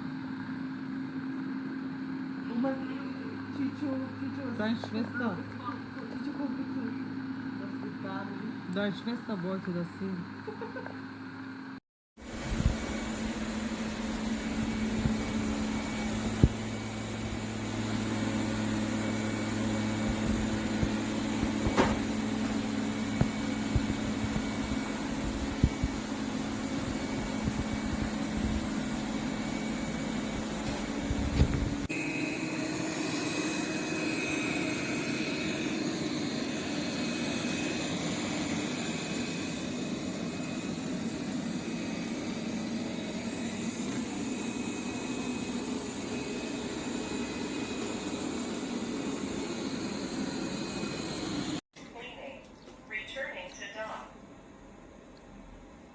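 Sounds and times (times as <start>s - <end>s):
robot vacuum humming: 12.2s - 51.6s.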